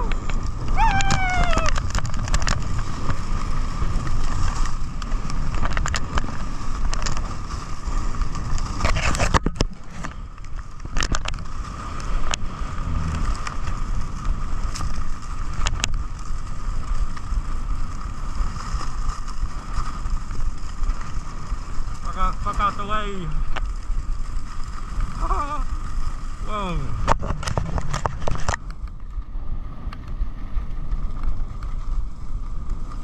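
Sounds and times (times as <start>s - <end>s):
wind buffeting microphone: 0.0s - 32.7s
skis running over snow: 0.0s - 33.0s.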